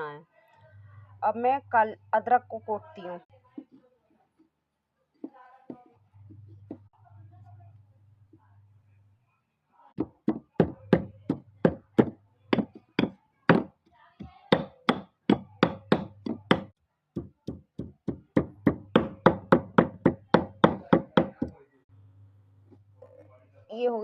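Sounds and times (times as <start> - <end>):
stone pounding in a bowl: 10.0 - 21.6.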